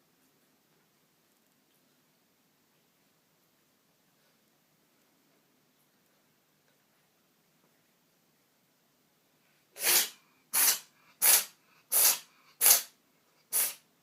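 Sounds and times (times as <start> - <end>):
cat sneezing: 9.8 - 13.9.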